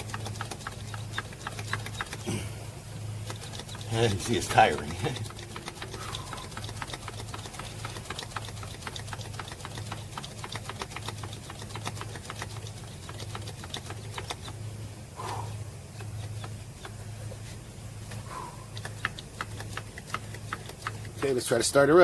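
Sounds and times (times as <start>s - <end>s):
hand pump clicking: 0.0s - 2.2s, 3.2s - 14.6s, 18.7s - 21.4s
low steady hum: 0.0s - 22.0s.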